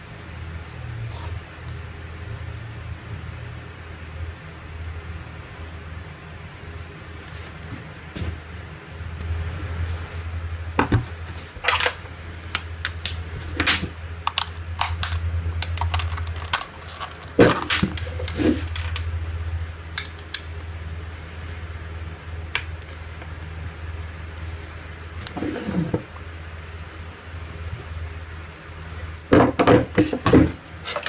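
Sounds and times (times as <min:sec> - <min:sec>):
steady low hum: 0:00.0 - 0:31.0
packaging rustling: 0:14.3 - 0:19.1.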